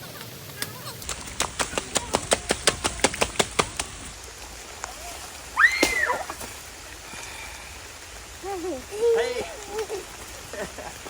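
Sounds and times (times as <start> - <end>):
child squealing: 5.6 - 6.4.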